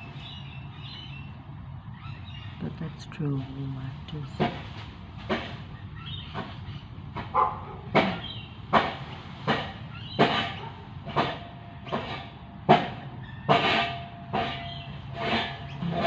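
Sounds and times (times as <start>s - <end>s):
sharp knocks: 4.4s - 5.7s, 6.3s - 16.0s.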